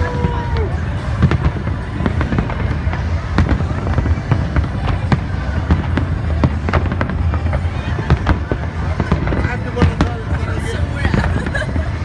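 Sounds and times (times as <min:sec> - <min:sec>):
fireworks bursting with bangs: 0:00.0 - 0:12.0
low rumble of explosions: 0:00.0 - 0:12.0.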